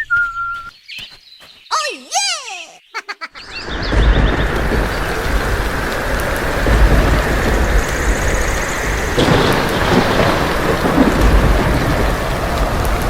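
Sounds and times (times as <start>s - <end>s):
heavy rain: 3.4s - 13.0s
rolling thunder: 3.4s - 13.0s.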